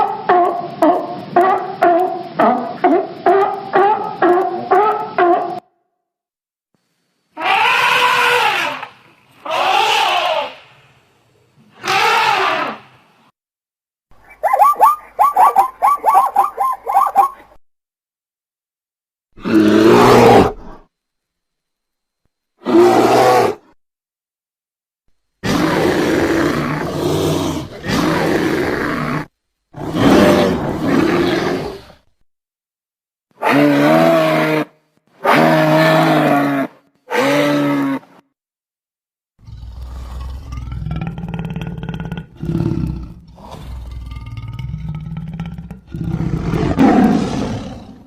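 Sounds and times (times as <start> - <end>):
creature roaring: 19.4 - 20.8, 22.6 - 23.7, 25.4 - 32.0, 33.4 - 38.1, 39.4 - 48.0.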